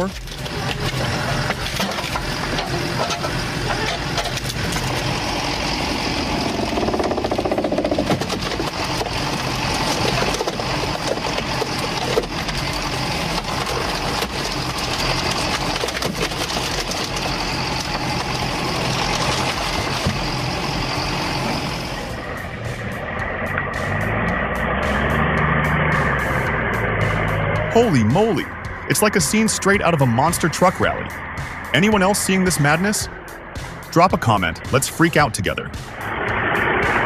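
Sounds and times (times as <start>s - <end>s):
log splitter engine running: 0.0s - 37.0s
sharp wood cracks: 0.1s - 20.6s.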